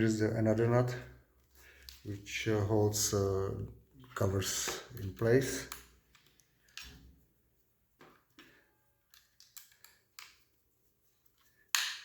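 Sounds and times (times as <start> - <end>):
small parts scraping and clicking: 4.0 - 7.2, 8.0 - 12.0.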